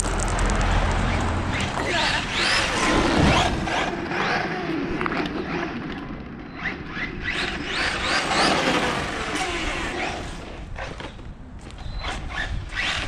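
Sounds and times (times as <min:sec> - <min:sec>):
electric motor whining: 0:06.6 - 0:11.2.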